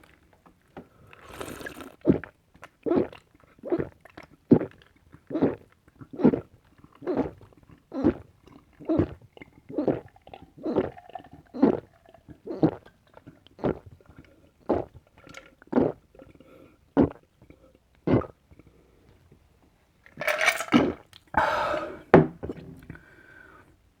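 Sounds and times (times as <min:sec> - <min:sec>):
gulping a drink: 0:00.0 - 0:19.4, 0:20.3 - 0:23.1
rough breathing: 0:21.4 - 0:23.7.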